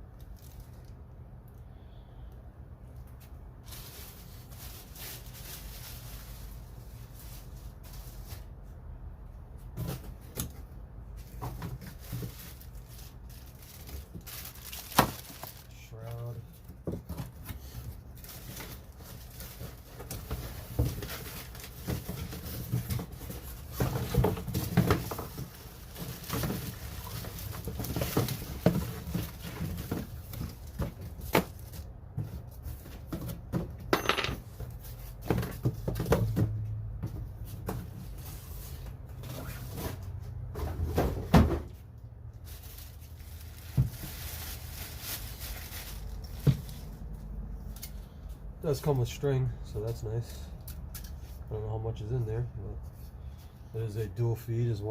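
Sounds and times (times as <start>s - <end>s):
packaging rustling: 3.2s - 8.6s, 11.2s - 15.8s, 16.4s - 33.1s, 42.4s - 48.0s.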